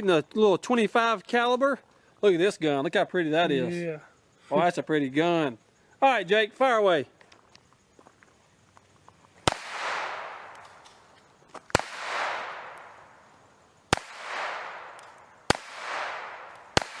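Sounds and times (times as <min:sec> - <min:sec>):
pistol shots with echo: 0:09.4 - 0:11.0, 0:11.7 - 0:13.3, 0:13.9 - 0:17.0.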